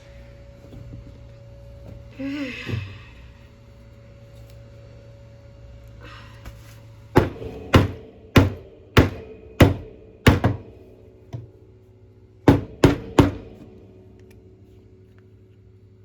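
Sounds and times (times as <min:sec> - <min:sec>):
hard knocks on metal drill chuck: 0:07.2 - 0:11.5, 0:12.5 - 0:13.8.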